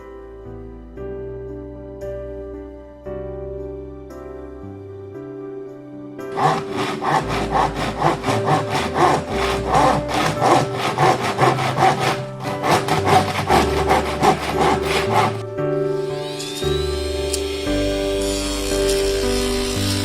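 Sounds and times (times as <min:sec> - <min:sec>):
sandpaper rubbing bamboo cane: 0:06.3 - 0:15.4.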